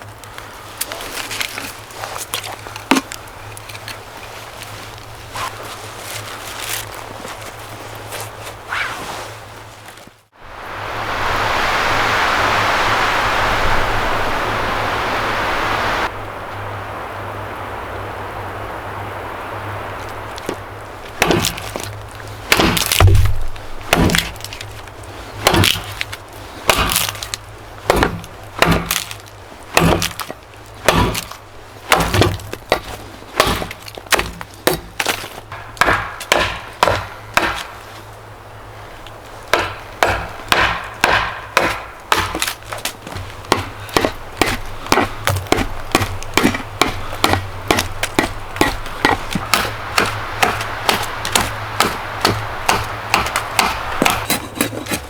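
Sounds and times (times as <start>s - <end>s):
sharp knocks on wood: 31.9s - 37.8s, 39.5s - 54.2s.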